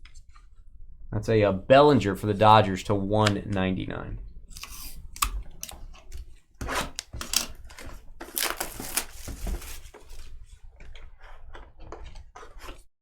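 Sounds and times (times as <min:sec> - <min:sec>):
card sleeves crinkling and clicking: 0:04.6 - 0:10.3.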